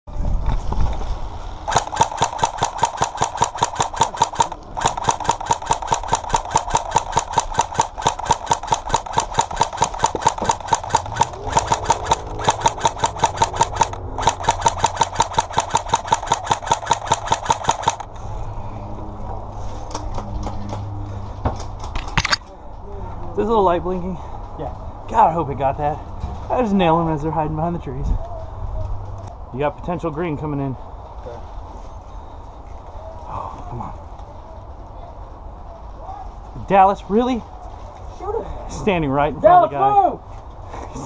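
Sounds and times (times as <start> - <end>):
low steady hum: 0.1 - 29.3
rapid mechanical clicking: 1.7 - 18.1.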